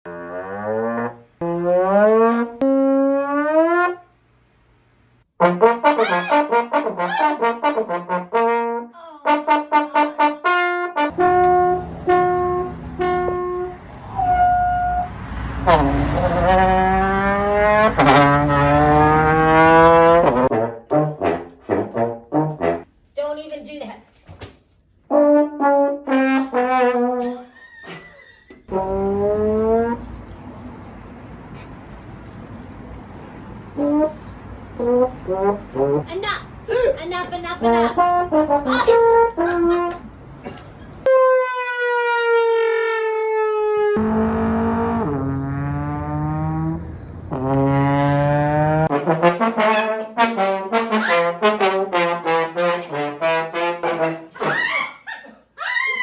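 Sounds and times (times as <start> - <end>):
brass-like sliding notes: 0.1 - 4.1, 5.4 - 22.8, 25.1 - 27.4, 28.7 - 30.1, 33.7 - 36.1, 37.7 - 39.9, 41.1 - 54.4
sad trombone sound effect: 5.4 - 22.8, 25.1 - 27.4, 28.7 - 30.0, 43.2 - 54.3.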